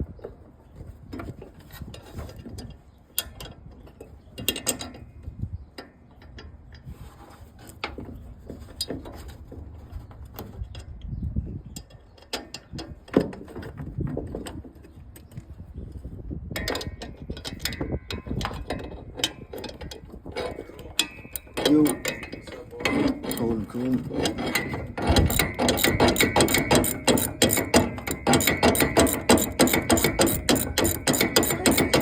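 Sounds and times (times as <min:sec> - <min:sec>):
metallic clack: 0:20.4 - 0:32.0
ratchet wrench clicking: 0:24.5 - 0:32.0.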